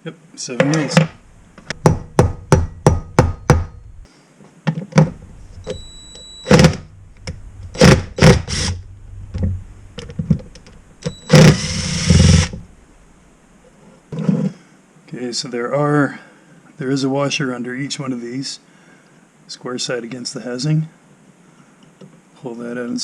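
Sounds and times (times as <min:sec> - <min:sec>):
noisy whirring: 0:00.0 - 0:04.1, 0:04.8 - 0:14.1.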